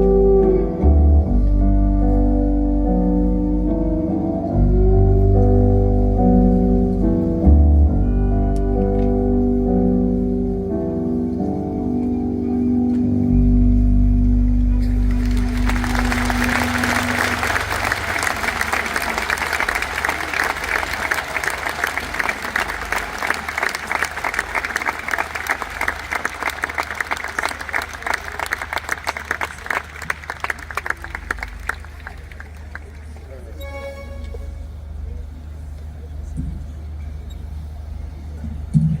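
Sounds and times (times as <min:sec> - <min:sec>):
low bass note: 0:00.0 - 0:19.9
live band sustained chord: 0:00.0 - 0:30.9
audience applause and cheering: 0:14.7 - 0:33.5.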